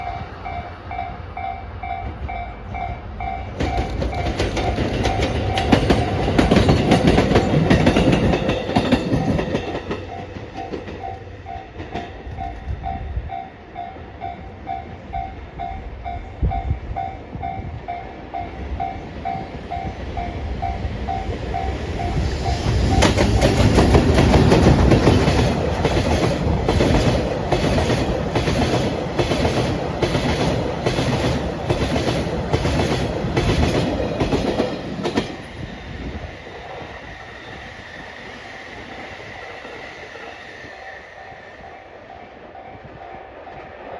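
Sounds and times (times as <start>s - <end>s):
diesel train passing: 0.0s - 43.9s
train wheels clicking over rail joints: 1.9s - 12.9s, 17.8s - 38.1s.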